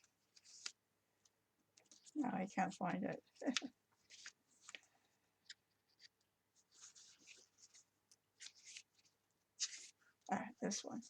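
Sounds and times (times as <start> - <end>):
book pages rustling: 0.0 - 11.0.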